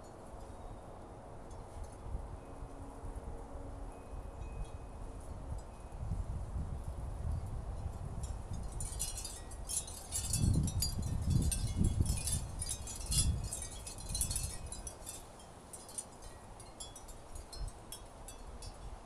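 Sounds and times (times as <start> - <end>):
wind buffeting microphone: 1.7 - 15.2
wind chimes ringing: 8.5 - 18.9.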